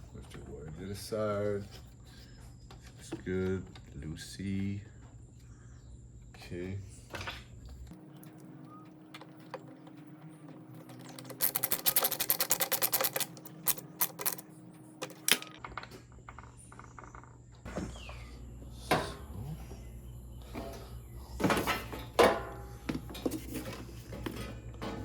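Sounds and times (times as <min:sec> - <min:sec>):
plastic parts clicking: 0:10.9 - 0:14.4, 0:15.0 - 0:17.2.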